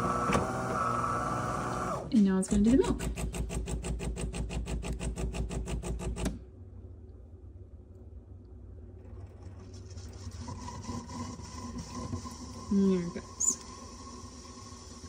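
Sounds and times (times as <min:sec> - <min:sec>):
espresso machine pump pulsing: 0:00.0 - 0:06.0, 0:09.0 - 0:15.0
low machine hum: 0:06.2 - 0:15.0
steam hissing with faint tone: 0:09.7 - 0:15.0.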